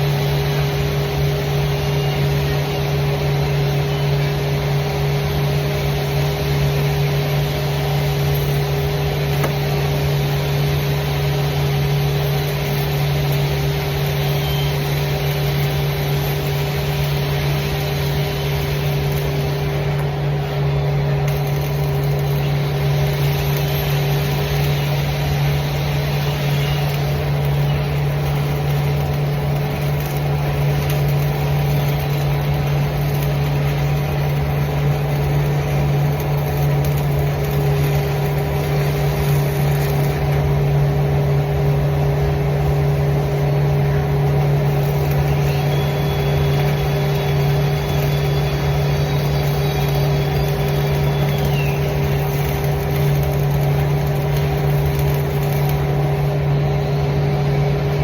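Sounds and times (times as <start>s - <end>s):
steady machine hum: 0.0s - 58.0s.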